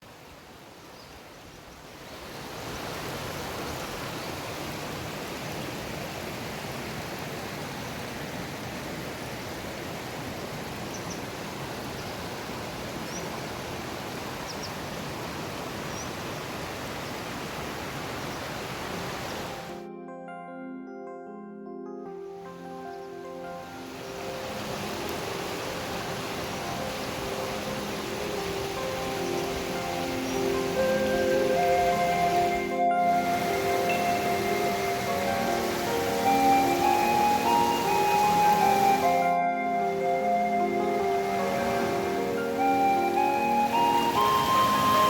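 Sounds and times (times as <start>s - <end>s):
stream rushing over rocks: 0.0s - 19.8s, 23.3s - 45.0s
music: 19.7s - 45.0s.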